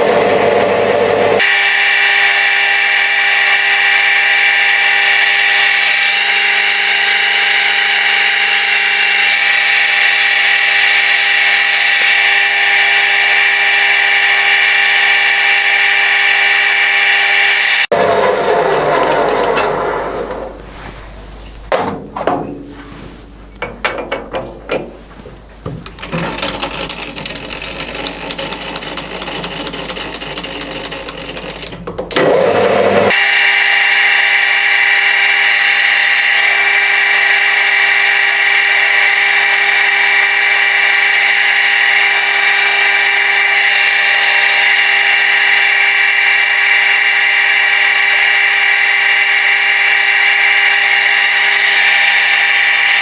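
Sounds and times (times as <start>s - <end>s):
lathe machine whine: 0.0s - 21.2s, 25.9s - 53.0s
irregular clicks and knocks: 21.5s - 32.3s.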